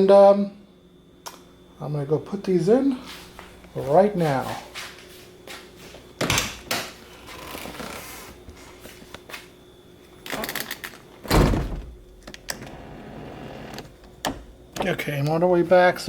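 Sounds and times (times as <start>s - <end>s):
heavy thump: 11.3s - 12.2s.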